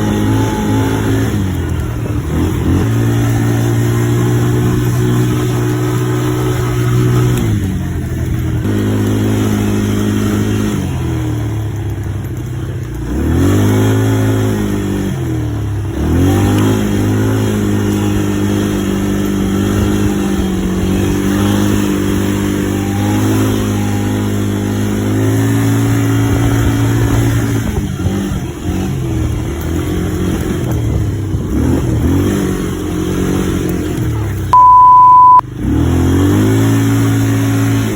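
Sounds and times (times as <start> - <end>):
atv engine running: 0.0 - 37.9
loud steady beep: 34.5 - 35.4.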